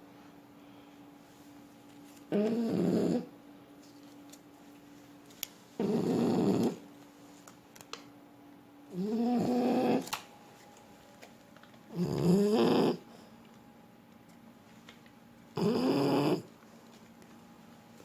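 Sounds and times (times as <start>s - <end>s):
dog snoring: 2.3s - 3.3s, 5.8s - 6.8s, 8.9s - 10.0s, 11.9s - 13.0s, 15.6s - 16.5s.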